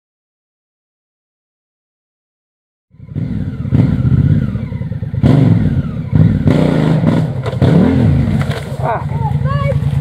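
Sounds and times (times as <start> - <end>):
motorcycle engine revving: 2.9 - 10.0
bike knocking and clattering: 8.3 - 10.0.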